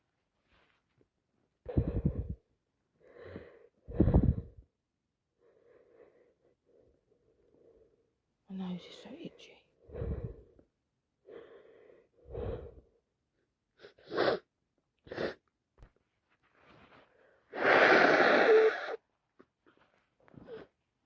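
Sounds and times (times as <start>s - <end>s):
woman breathing softly: 1.6s - 4.7s, 5.4s - 8.1s, 9.8s - 13.0s.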